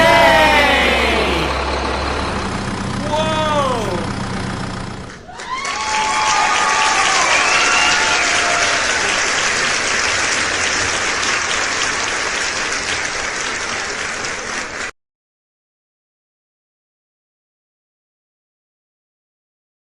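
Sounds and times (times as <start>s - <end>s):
applause: 5.3s - 14.9s.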